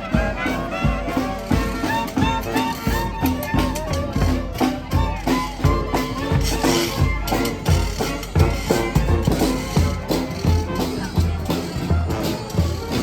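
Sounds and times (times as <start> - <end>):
steady drum beat: 0.0 - 13.0
street brass band playing: 0.0 - 13.0.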